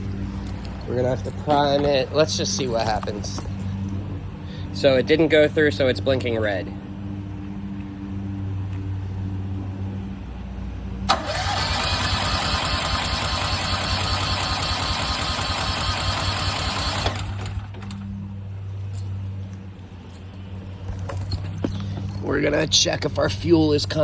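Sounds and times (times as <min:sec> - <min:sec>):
generator low hum: 0:00.0 - 0:22.5
electric starter cranking engine: 0:11.1 - 0:18.1.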